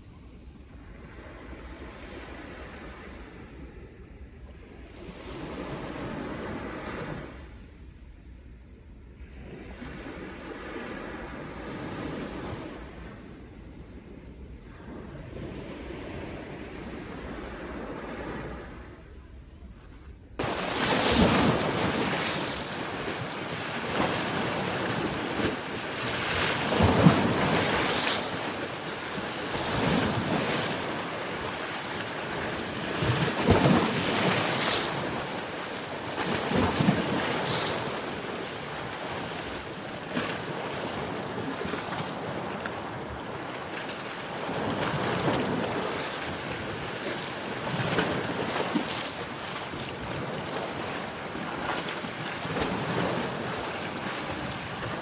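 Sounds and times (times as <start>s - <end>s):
waves breaking on shore: 20.4s - 55.0s.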